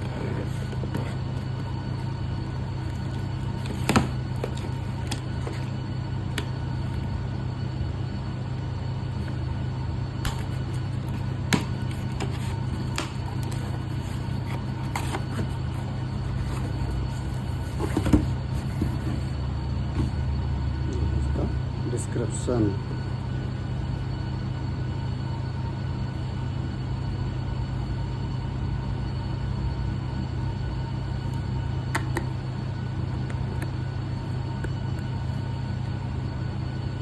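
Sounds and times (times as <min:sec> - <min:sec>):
packaging clicks and taps: 0:02.8 - 0:05.7, 0:10.3 - 0:19.2, 0:31.9 - 0:32.3.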